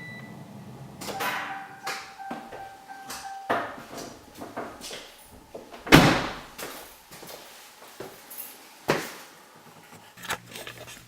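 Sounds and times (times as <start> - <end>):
low steady hum: 0.0 - 7.3
loud knocks and clunks: 5.8 - 6.5.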